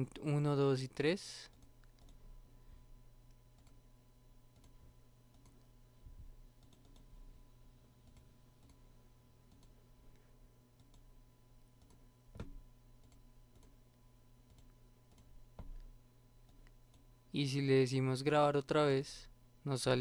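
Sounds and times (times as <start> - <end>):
low electrical hum: 0.0 - 20.0
computer mouse clicks: 1.5 - 2.2, 3.3 - 3.8, 4.5 - 5.7, 6.6 - 7.1, 8.0 - 8.8, 9.5 - 9.8, 10.8 - 13.8, 14.4 - 17.1.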